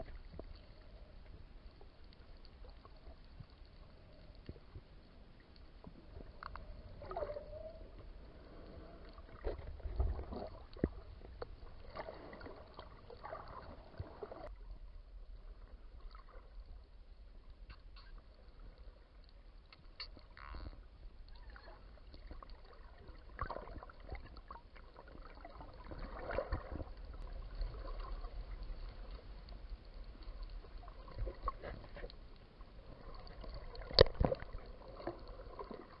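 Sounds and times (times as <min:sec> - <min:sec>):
underwater rumble: 0:00.0 - 0:36.0
dolphin clicks: 0:17.7 - 0:18.2.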